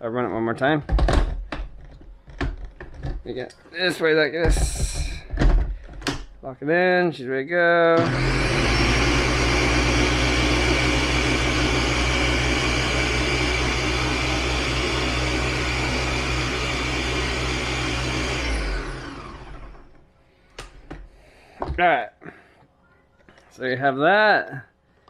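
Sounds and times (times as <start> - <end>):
blender pureeing: 8.0 - 20.0.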